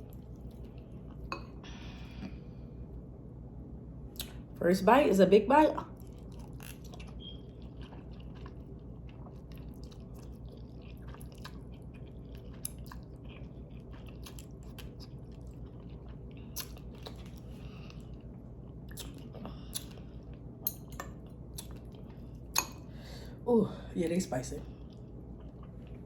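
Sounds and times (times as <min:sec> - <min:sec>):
person chewing noodles: 0:00.0 - 0:01.4, 0:05.9 - 0:23.1, 0:24.7 - 0:26.0.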